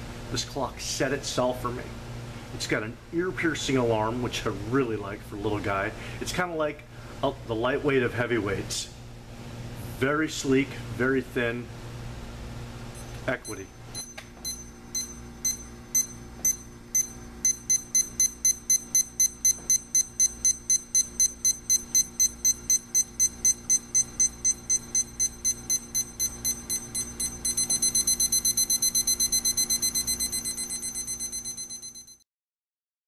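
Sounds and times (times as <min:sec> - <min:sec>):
alarm clock beeping: 0:13.0 - 0:32.2.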